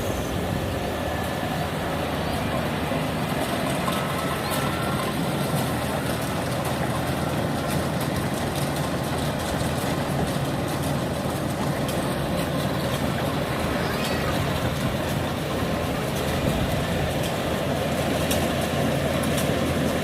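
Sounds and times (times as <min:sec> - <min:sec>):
combine harvester running: 0:00.0 - 0:20.0.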